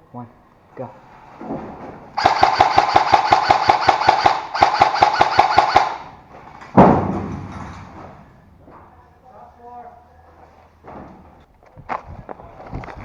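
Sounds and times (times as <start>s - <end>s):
airsoft gun firing full-auto: 2.2s - 6.2s
loud ringing bang: 6.7s - 8.5s.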